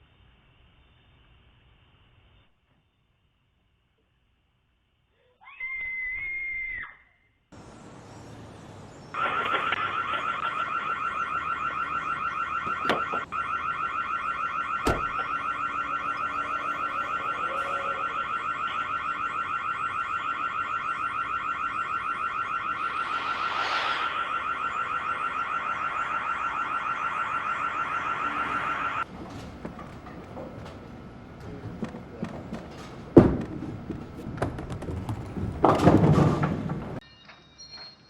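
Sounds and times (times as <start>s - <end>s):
electronic alarm pulsing tone: 9.2s - 29.0s.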